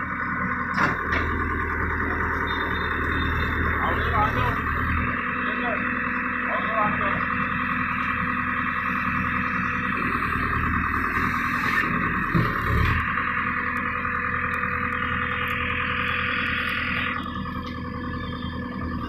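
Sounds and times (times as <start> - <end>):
diesel engine running: 0.0 - 19.0.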